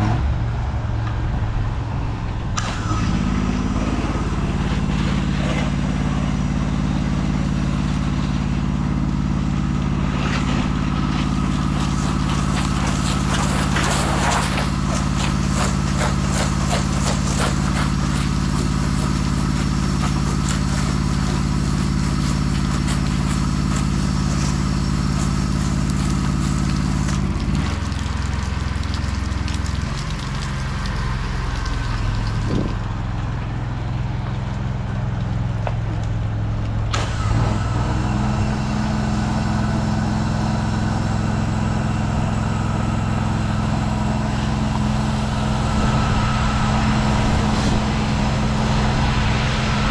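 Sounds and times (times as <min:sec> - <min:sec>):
engine running steadily: 0:00.0 - 0:49.9
hiss: 0:10.1 - 0:27.2.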